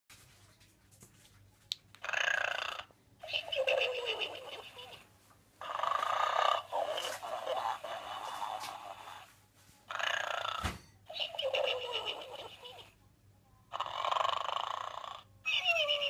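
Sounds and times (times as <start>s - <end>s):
toy playing recorded snoring: 2.1s - 5.0s, 5.6s - 9.3s, 9.9s - 12.9s, 13.7s - 16.0s.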